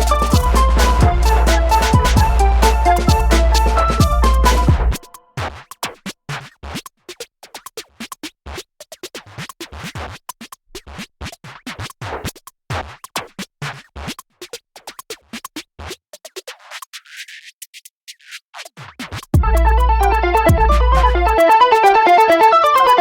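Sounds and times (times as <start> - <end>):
melodic music: 0.0 - 5.2, 19.4 - 23.0
sparse electronic beat: 0.0 - 5.2, 19.4 - 22.0.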